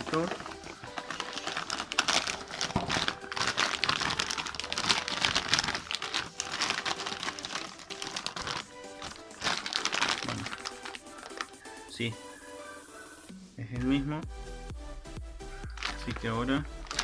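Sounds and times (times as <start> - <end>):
packaging crinkling: 0.0 - 11.7, 15.7 - 17.0.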